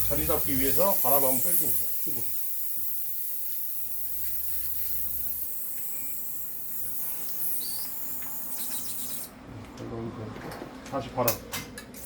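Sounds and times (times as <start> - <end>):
air hissing from tube valve: 0.0 - 9.3.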